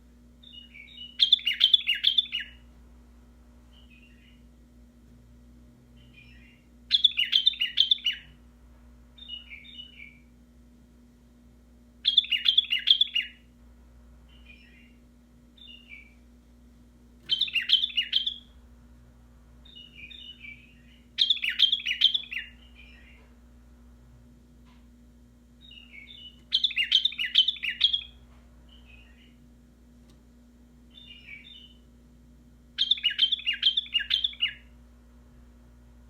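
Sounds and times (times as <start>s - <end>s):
bird singing quick phrases: 0.4s - 2.6s, 6.0s - 8.4s, 12.0s - 13.4s, 17.2s - 18.5s, 19.6s - 23.2s, 25.6s - 29.4s, 30.9s - 31.9s, 32.8s - 34.7s.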